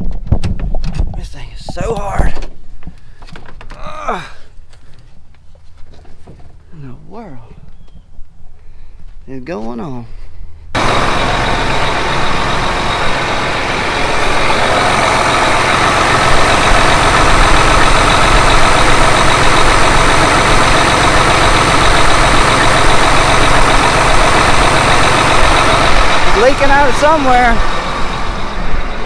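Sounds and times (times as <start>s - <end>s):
tractor diesel engine running: 10.8s - 29.0s.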